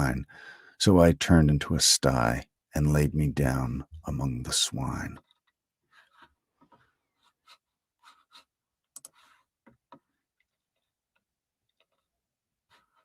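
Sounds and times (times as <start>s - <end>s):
soft rustle: 5.2s - 8.5s.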